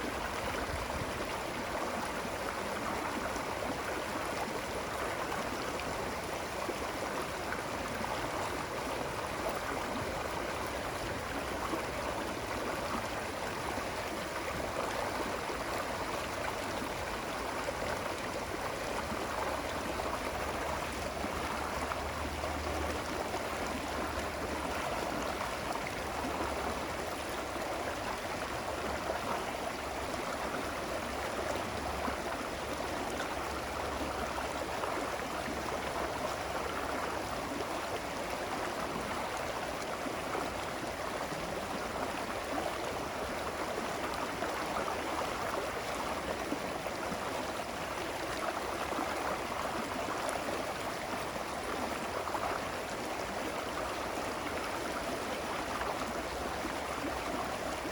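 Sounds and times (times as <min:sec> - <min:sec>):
running water rushing: 0:00.0 - 0:57.9.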